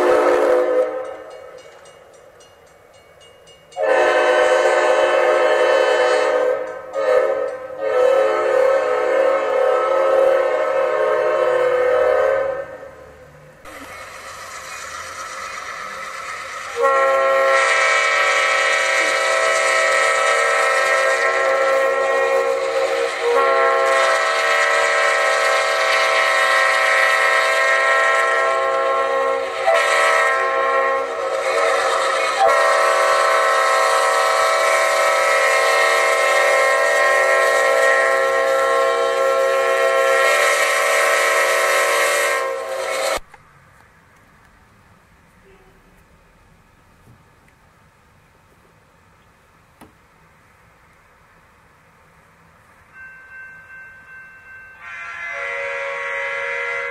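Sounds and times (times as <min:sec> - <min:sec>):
locomotive air horn chord: 0:00.0 - 0:01.4, 0:03.8 - 0:13.1, 0:16.7 - 0:43.2, 0:54.8 - 0:56.9
train noise: 0:00.0 - 0:56.9.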